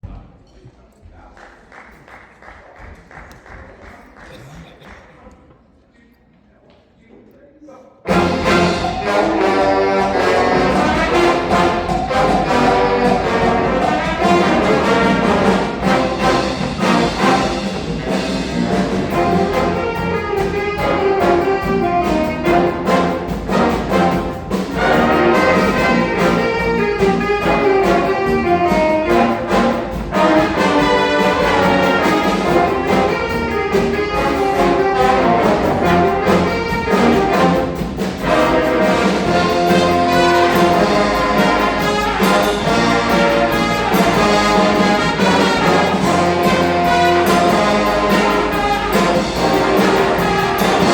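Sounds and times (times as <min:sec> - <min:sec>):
brass band playing: 0:08.0 - 0:50.9
percussion hits: 0:08.1 - 0:50.9.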